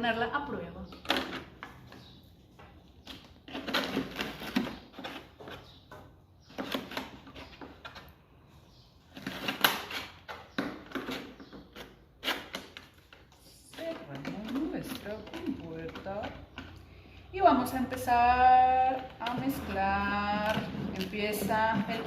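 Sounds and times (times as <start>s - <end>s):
rustling and knocking: 19.1s - 22.0s.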